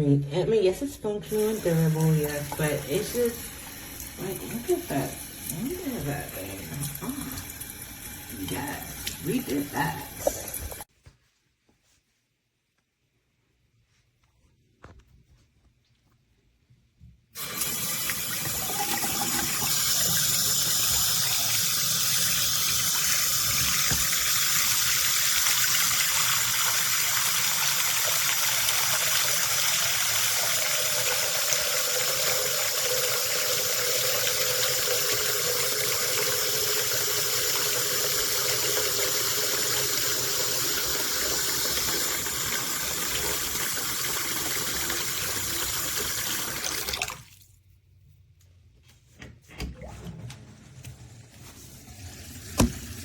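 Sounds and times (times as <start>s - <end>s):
faucet running into sink: 1.3s - 10.8s, 17.4s - 47.4s, 51.9s - 53.0s.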